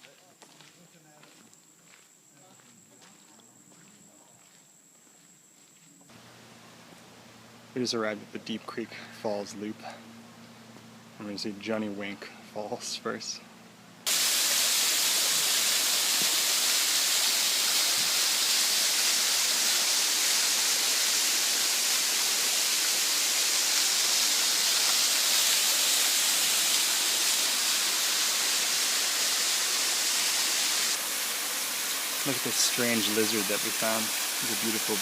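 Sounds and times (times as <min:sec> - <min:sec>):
waterfall hissing: 0:14.1 - 0:35.0.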